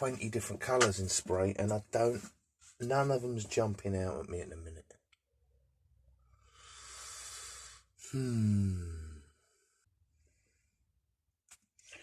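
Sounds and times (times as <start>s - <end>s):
man sighing: 8.0s - 9.3s.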